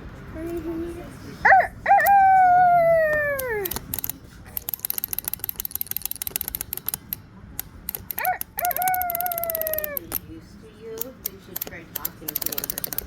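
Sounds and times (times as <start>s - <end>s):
rooster crowing: 1.5s - 3.7s, 8.2s - 10.0s
rapid mechanical clicking: 3.3s - 13.0s.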